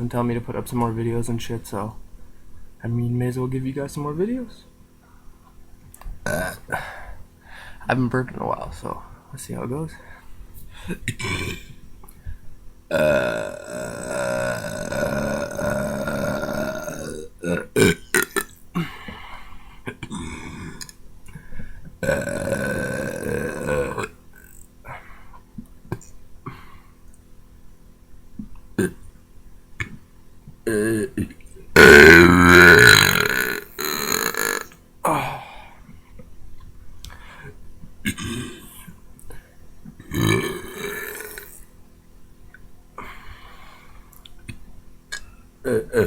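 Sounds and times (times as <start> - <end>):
man belching: 6.2 - 6.9, 11.1 - 11.8, 12.9 - 18.9, 19.9 - 21.0, 22.0 - 24.7, 28.8 - 29.1, 30.6 - 35.5, 38.0 - 38.9, 40.0 - 41.6, 45.1 - 46.0.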